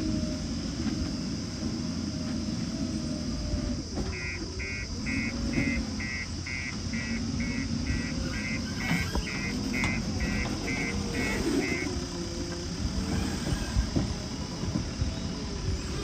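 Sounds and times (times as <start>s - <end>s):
diesel engine running: 0.0s - 16.0s
reversing alarm beeping: 4.1s - 12.1s.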